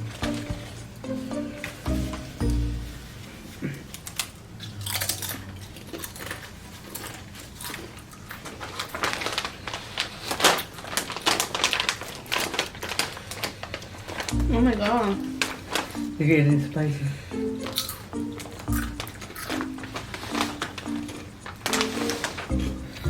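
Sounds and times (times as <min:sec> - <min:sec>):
irregular clicks and crackles: 0:03.9 - 0:16.2, 0:17.6 - 0:23.0.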